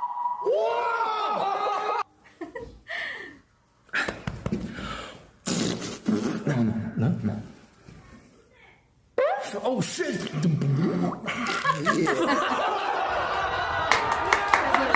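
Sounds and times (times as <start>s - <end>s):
beatboxing mouth sound effects: 5.4s - 6.6s.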